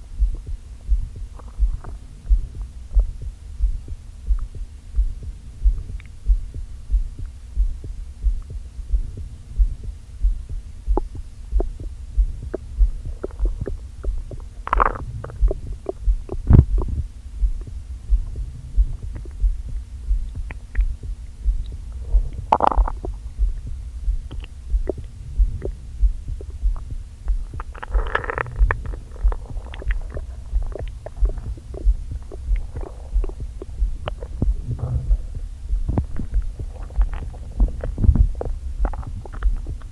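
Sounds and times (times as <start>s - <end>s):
steady low thump: 0.0s - 39.9s
stomach gurgling and rumbling: 0.0s - 39.9s.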